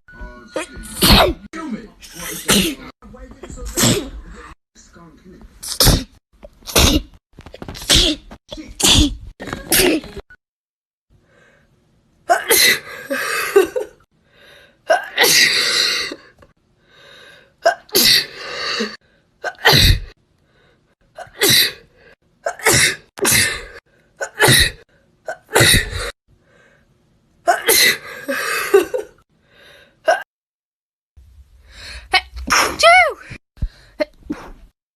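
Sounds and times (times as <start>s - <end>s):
people sneezing: 0.9s - 1.4s, 32.4s - 33.0s.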